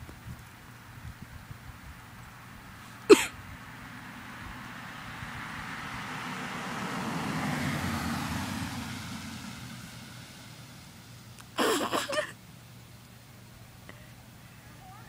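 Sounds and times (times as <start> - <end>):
car driving past: 3.5 - 11.4.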